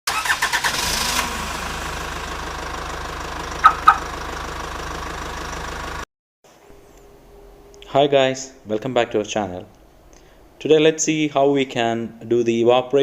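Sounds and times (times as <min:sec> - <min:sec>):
engine idling: 0:00.5 - 0:06.0.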